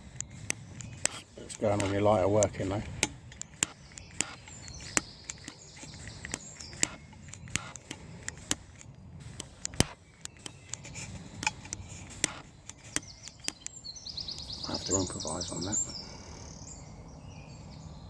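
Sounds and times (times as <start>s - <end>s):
lighter striking clicks: 0.0s - 13.9s.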